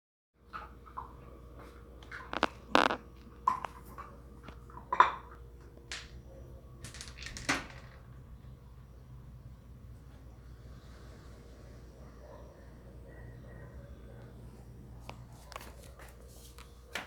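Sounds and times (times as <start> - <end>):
low steady hum: 0.4 - 17.0
hard objects knocking and clattering: 6.8 - 8.3.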